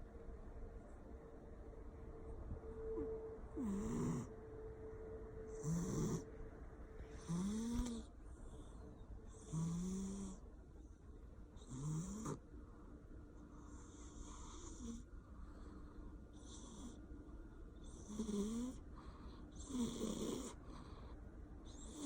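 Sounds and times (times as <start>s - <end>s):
cat snoring: 3.6s - 4.3s, 5.5s - 6.3s, 7.0s - 10.4s, 11.6s - 12.4s, 13.6s - 15.6s, 16.4s - 17.0s, 17.8s - 21.1s, 21.7s - 22.0s.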